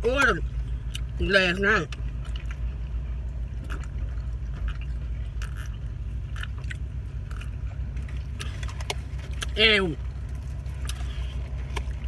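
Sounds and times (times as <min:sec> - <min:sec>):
car low hum: 0:00.0 - 0:12.0
chewing mouth clicks and smacks: 0:01.9 - 0:02.9, 0:03.6 - 0:09.6, 0:10.7 - 0:12.0.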